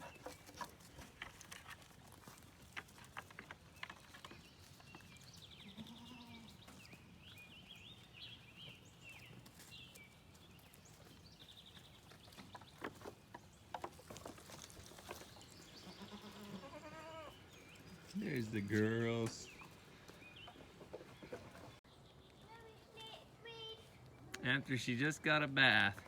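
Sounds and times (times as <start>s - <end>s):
faint goat bleats: 5.6s - 6.5s, 15.8s - 17.4s.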